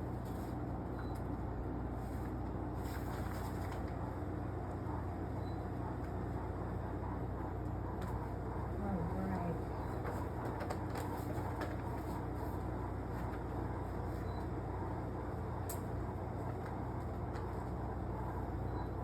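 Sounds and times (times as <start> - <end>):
air conditioner fan whoosh: 0.0 - 19.0
constant low hum: 0.0 - 19.0.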